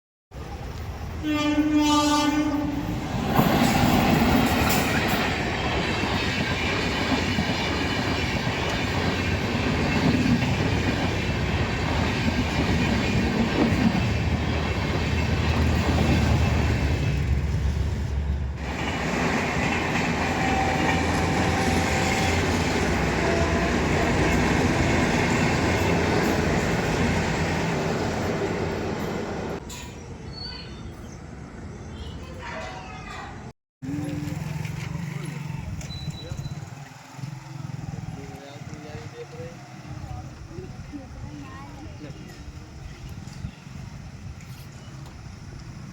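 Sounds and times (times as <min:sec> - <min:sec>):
train rumbling past: 0:00.4 - 0:45.9
wheels clattering over rail joints: 0:03.0 - 0:30.0.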